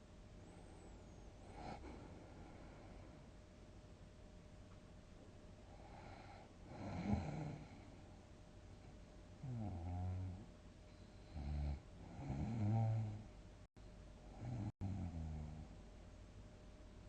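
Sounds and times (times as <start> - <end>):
person snoring heavily: 5.9 - 7.8.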